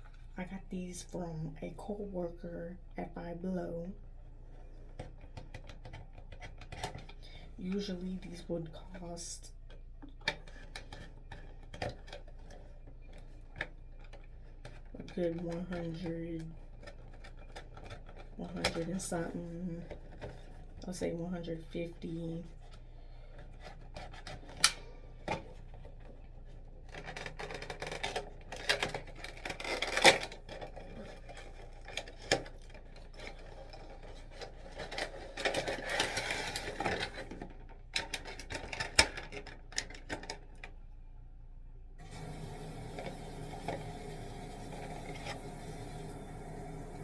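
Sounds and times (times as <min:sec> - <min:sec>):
faint steady hum: 0:00.0 - 0:47.0
rubbing and scraping of packaging: 0:10.4 - 0:20.9, 0:22.0 - 0:40.3.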